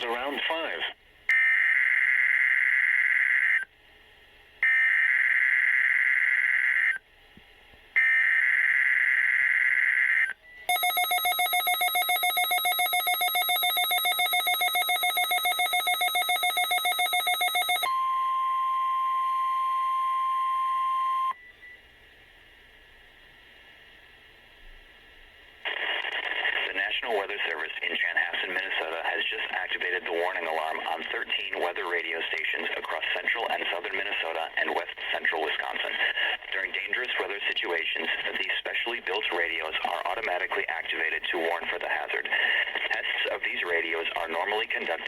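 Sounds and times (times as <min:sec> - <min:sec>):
steady radio alarm tone: 0:04.6 - 0:07.0, 0:08.0 - 0:21.4
buzzing digital header tones: 0:10.7 - 0:21.4
fast-pulsing electronic ringing tone: 0:10.7 - 0:21.4.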